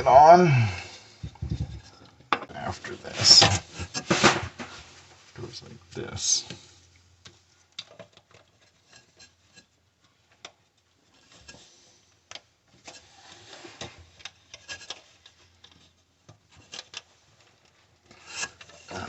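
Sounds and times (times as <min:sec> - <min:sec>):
plastic fittings scraping: 0:12.7 - 0:19.0.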